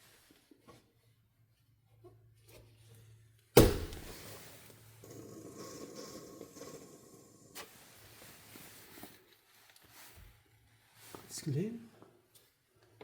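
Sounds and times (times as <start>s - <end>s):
sharp clunk: 3.6s - 4.2s.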